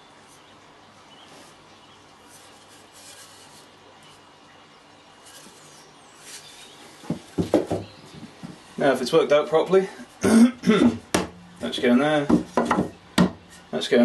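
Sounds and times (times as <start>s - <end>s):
sharp knocks of wood on wood: 7.0s - 8.6s, 10.8s - 11.4s, 12.2s - 13.5s.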